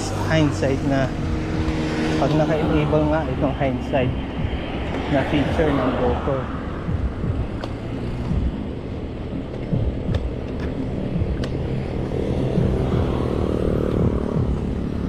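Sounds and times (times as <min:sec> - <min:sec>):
road rumble: 0:00.0 - 0:15.0
wind buffeting: 0:00.0 - 0:15.0
bike rattling ticks: 0:09.4 - 0:13.2.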